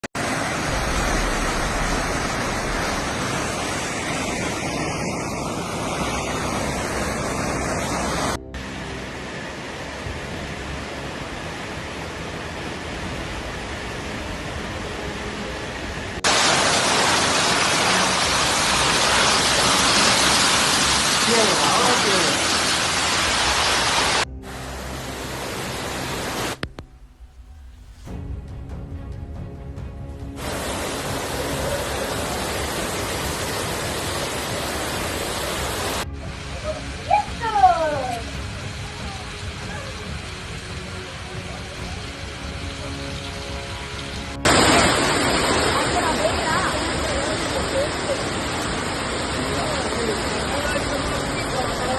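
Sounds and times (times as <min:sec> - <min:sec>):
floodwater rushing: 0:00.0 - 0:26.8, 0:30.4 - 0:51.9
low hum: 0:00.2 - 0:16.2, 0:23.1 - 0:37.1.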